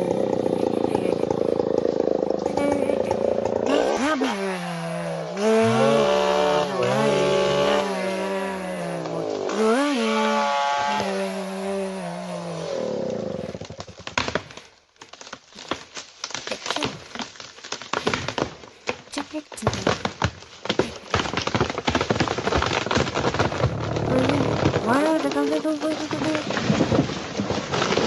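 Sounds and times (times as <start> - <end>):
chainsaw engine revving: 0.0 - 13.7, 23.6 - 28.0
sharp cracks and snaps: 13.1 - 28.0.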